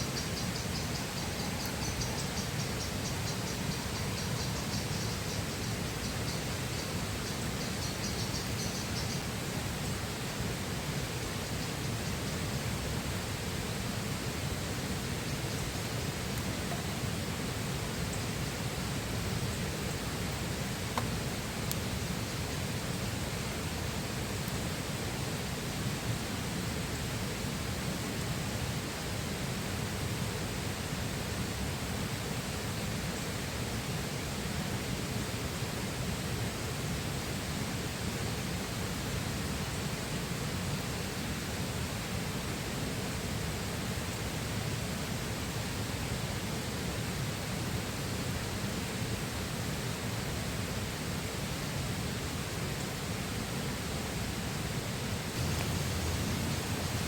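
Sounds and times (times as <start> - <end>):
river water rushing: 54.1 - 57.0.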